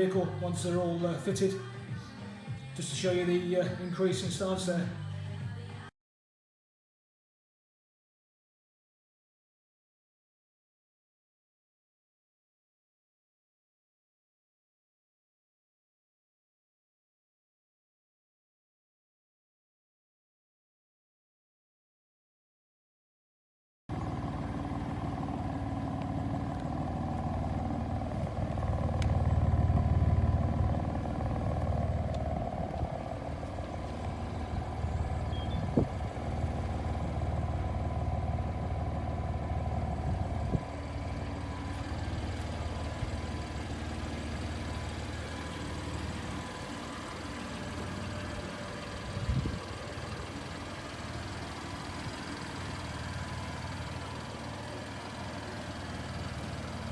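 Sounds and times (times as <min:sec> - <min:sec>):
car engine idling: 0:23.9 - 0:56.9.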